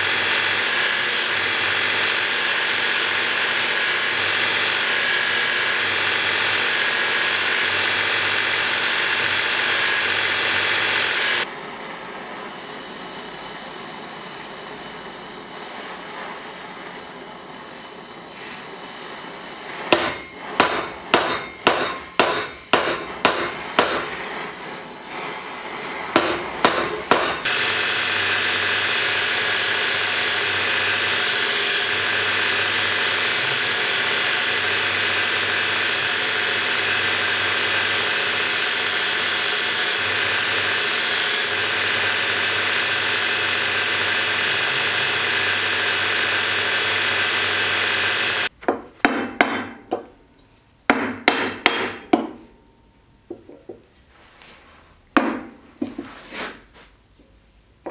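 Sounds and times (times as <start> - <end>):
power tool motor running: 0.0 - 48.5
hammer taps: 19.9 - 24.2, 26.2 - 27.5, 48.6 - 52.6, 55.2 - 56.1.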